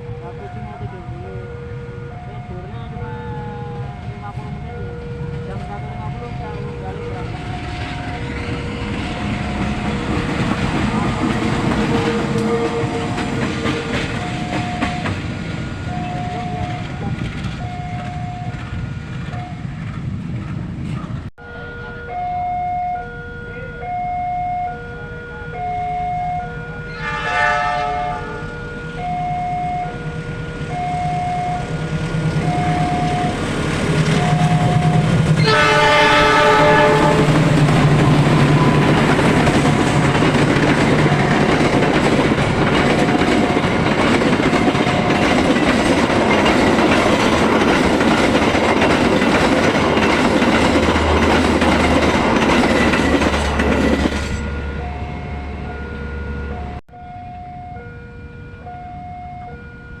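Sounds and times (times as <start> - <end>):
level-crossing warning signal ringing: 0.0 - 19.9, 21.4 - 60.0
train wheels clattering on rails: 7.1 - 21.2, 31.8 - 54.4
train horn: 11.8 - 14.2, 26.4 - 31.4, 34.2 - 40.1.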